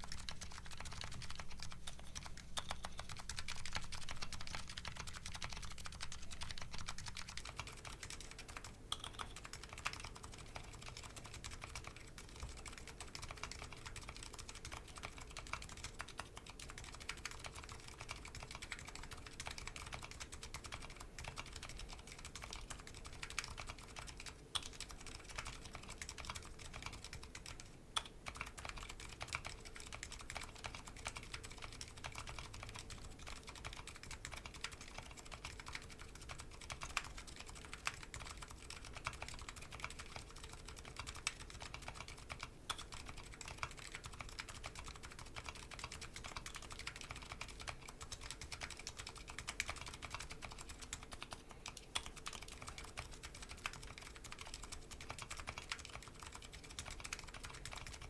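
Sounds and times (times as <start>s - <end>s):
keyboard keystroke clacks: 0.0s - 11.9s.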